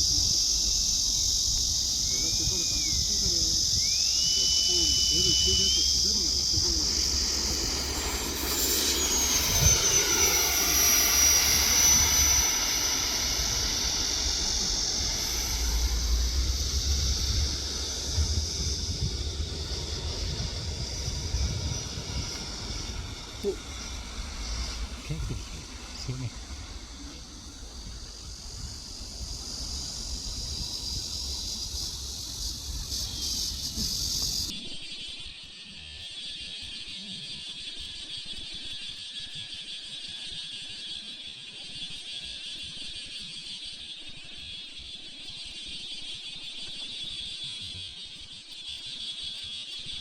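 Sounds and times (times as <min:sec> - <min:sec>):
wind rumble on microphone: 0:00.0 - 0:34.5
model jet fan whine flying past: 0:00.0 - 0:50.0.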